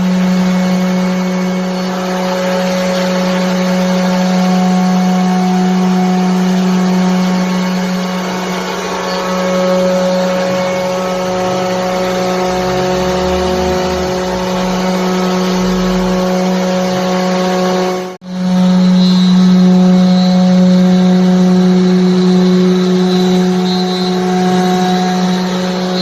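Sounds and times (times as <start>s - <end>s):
router spindle cutting wood: 0.0s - 26.0s.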